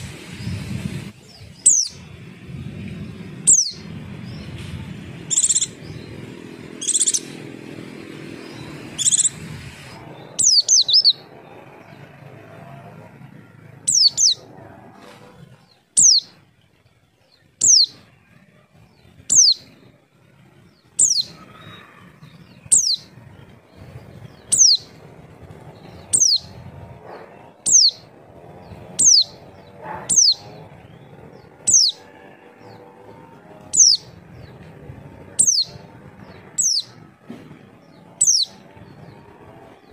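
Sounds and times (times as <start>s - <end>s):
sharp bird chirps: 1.2s - 2.1s, 3.4s - 7.5s, 8.4s - 11.3s, 13.9s - 14.5s, 15.7s - 16.4s, 17.3s - 18.2s, 19.0s - 19.8s, 20.8s - 25.1s, 25.7s - 32.8s, 33.7s - 34.6s, 35.4s - 37.0s, 38.2s - 38.7s
bird calling downward-slurred notes: 1.3s - 2.1s, 5.2s - 7.4s, 8.5s - 15.0s, 15.6s - 16.4s, 17.6s - 19.9s, 20.6s - 25.2s, 25.8s - 34.7s, 35.4s - 37.0s, 38.1s - 39.2s.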